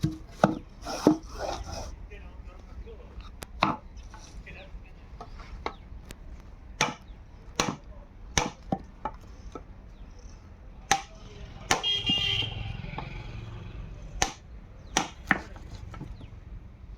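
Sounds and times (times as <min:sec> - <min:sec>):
sharp knocks on wood: 0:06.8 - 0:07.8, 0:08.4 - 0:09.2, 0:14.2 - 0:14.4.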